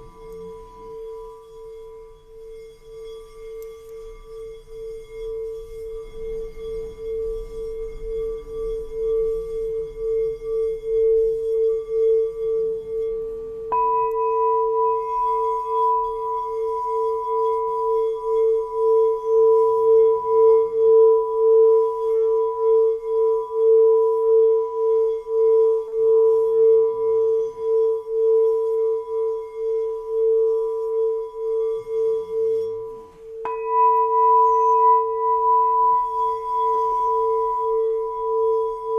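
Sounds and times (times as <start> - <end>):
singing bowl ringing: 0.0 - 38.9.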